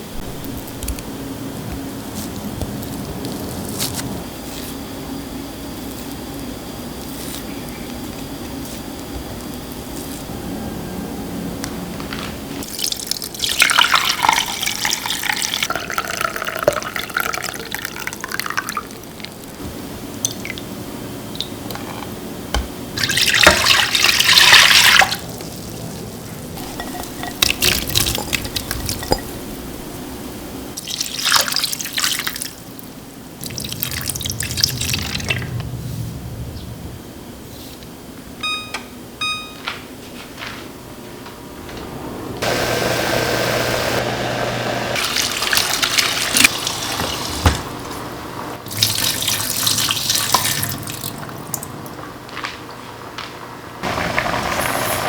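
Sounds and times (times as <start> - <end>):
tap water running into sink: 45.0 - 48.0, 48.7 - 51.7.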